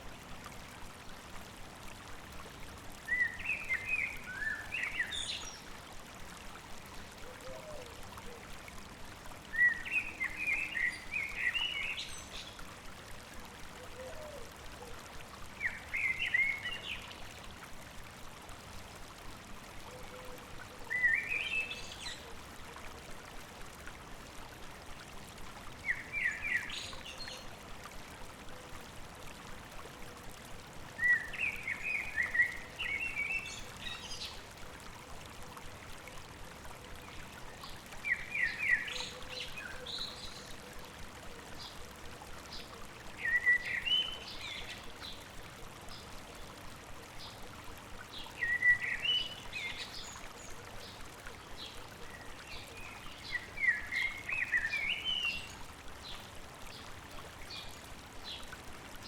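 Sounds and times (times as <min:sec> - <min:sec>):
babbling stream: 0:00.0 - 0:59.0
songbird singing: 0:03.1 - 0:05.6, 0:09.5 - 0:12.6, 0:20.9 - 0:22.3, 0:25.8 - 0:27.5, 0:31.0 - 0:34.4, 0:37.1 - 0:40.6, 0:42.5 - 0:45.2, 0:48.1 - 0:51.0, 0:51.6 - 0:56.8.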